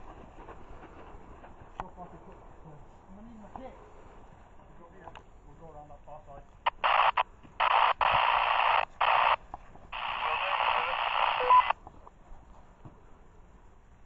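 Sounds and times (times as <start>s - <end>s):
two-way radio static bursts: 6.6s - 11.8s.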